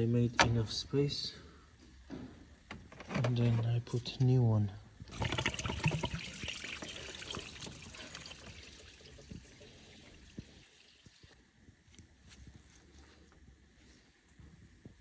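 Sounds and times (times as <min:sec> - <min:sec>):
liquid pouring and trickling: 0:05.1 - 0:11.4.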